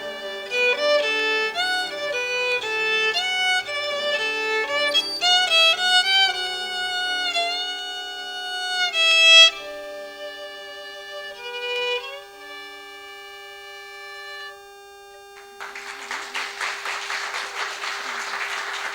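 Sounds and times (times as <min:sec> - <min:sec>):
solo violin: 0:00.0 - 0:14.6.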